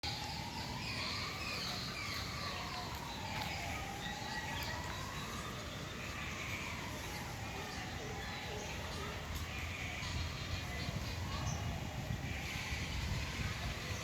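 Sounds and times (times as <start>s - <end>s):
small birds chirping: 0.2s - 14.0s.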